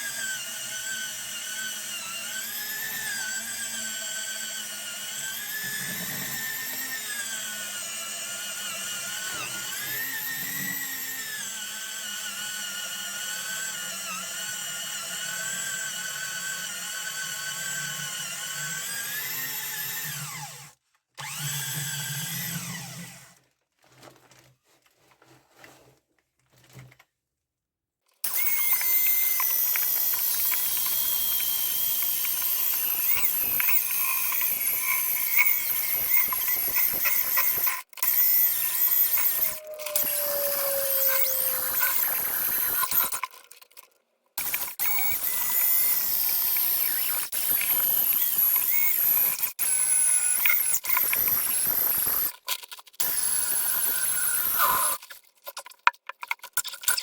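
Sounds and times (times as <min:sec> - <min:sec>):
high power tool whine: 0:00.0 - 0:20.6, 0:21.2 - 0:23.1, 0:28.3 - 0:43.2, 0:44.4 - 0:52.3, 0:53.0 - 0:55.0
electric drill whining: 0:00.0 - 0:23.4, 0:28.2 - 0:43.2, 0:44.4 - 0:52.4, 0:53.0 - 0:55.0.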